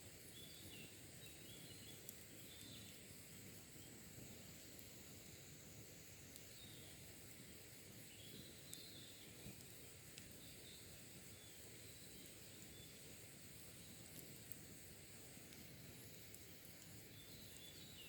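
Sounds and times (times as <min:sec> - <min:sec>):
faint hiss: 0:00.0 - 0:18.0
embers crackling: 0:08.3 - 0:18.0.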